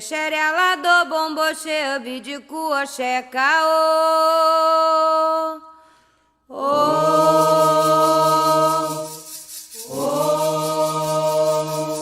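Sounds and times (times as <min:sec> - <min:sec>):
voices singing a chant: 0:06.5 - 0:12.0.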